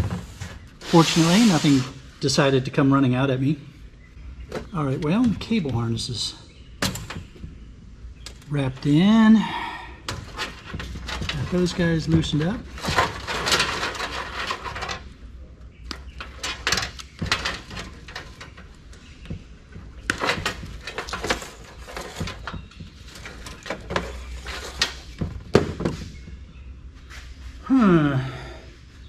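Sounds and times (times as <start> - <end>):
metal scraping: 0.0 - 2.1, 10.1 - 15.2, 15.9 - 25.2
clicks and knocks: 10.1 - 15.1, 15.8 - 26.3.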